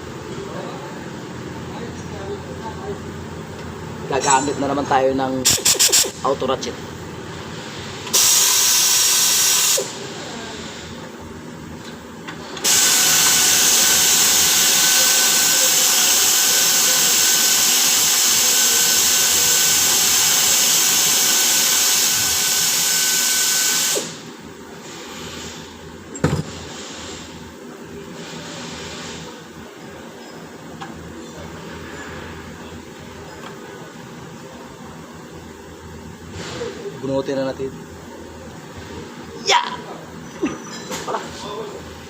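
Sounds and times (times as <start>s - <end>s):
power ratchet whining: 5.4s - 6.2s, 8.0s - 9.9s, 12.6s - 24.3s.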